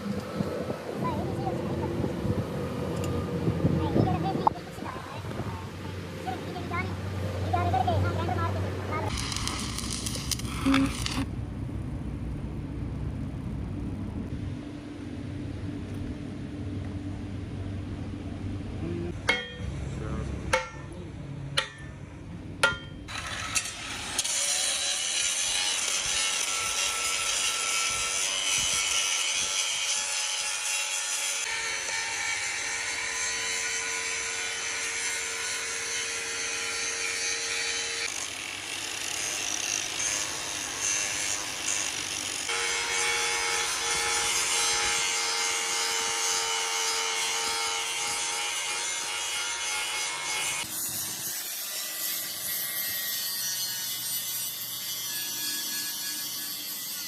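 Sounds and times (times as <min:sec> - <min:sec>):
power tool scraping metal: 0:09.0 - 0:11.3, 0:23.1 - 0:57.0
sharp metallic clanks: 0:19.2 - 0:19.8, 0:20.5 - 0:24.4.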